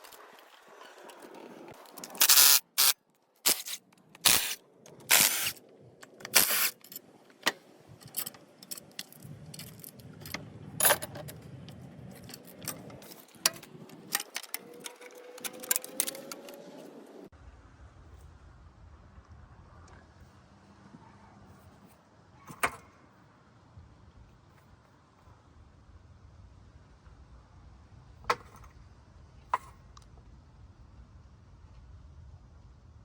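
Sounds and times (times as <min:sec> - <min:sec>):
metal tools clicking and scraping: 0:01.8 - 0:16.8.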